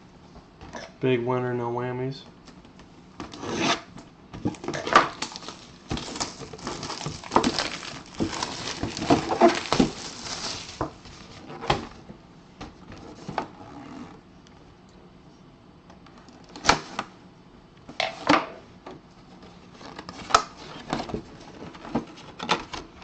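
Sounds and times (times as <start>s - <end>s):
packaging rustling and crinkling: 4.4s - 11.4s.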